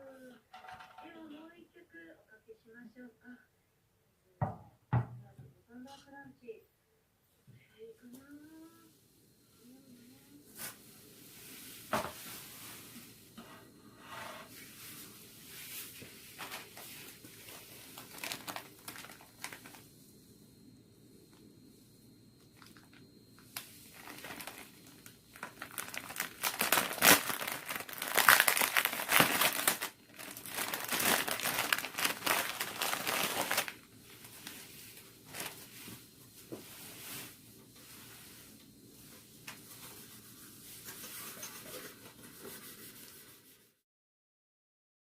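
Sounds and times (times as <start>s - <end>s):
plastic crinkling and rustling: 14.5s - 19.9s, 22.5s - 43.1s.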